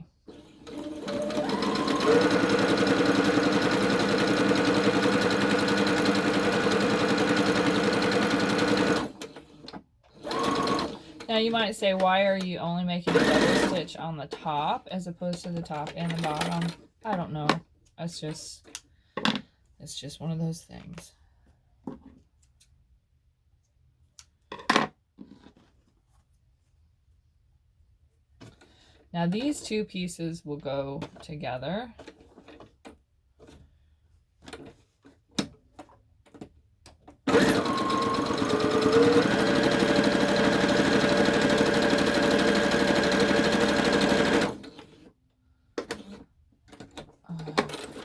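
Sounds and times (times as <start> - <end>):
sewing machine stitching: 0.2 - 11.6, 13.0 - 13.9, 16.0 - 16.8, 37.3 - 45.1
sewing tools clicking: 37.3 - 44.8.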